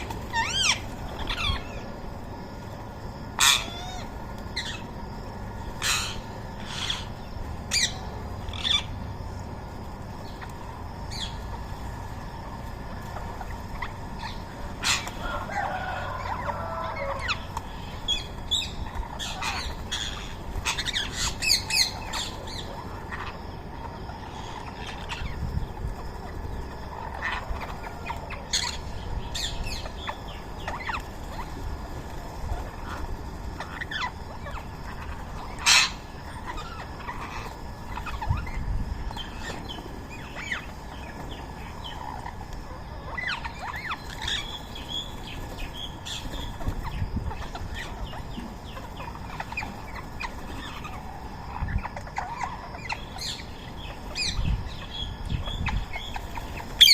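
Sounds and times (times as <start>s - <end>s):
parrots giving sharp calls: 0.3s - 1.7s, 3.4s - 4.8s, 33.6s - 38.5s, 56.2s - 56.9s.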